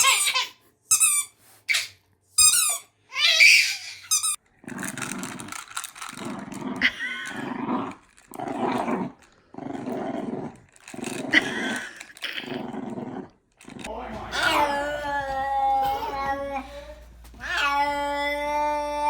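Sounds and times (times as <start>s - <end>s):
dog growling: 4.6s - 19.0s.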